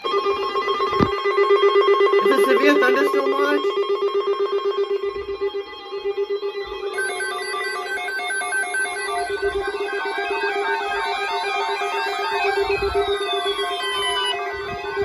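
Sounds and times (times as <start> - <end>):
pulsing electronic ringer tone: 0.0 - 15.0.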